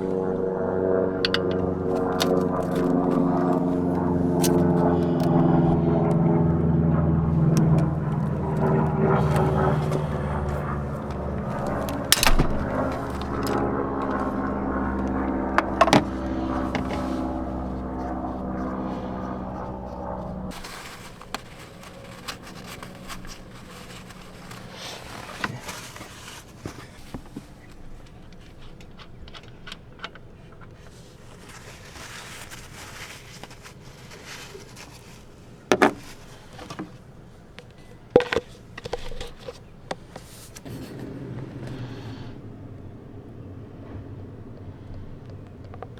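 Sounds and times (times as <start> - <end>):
car engine humming: 0.0 - 27.9, 40.4 - 45.9.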